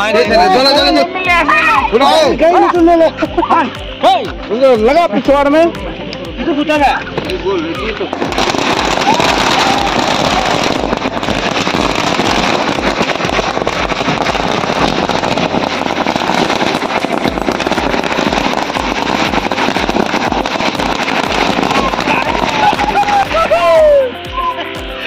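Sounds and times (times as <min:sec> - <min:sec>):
firecrackers crackling: 0:00.0 - 0:25.0
street celebration din: 0:00.0 - 0:25.0.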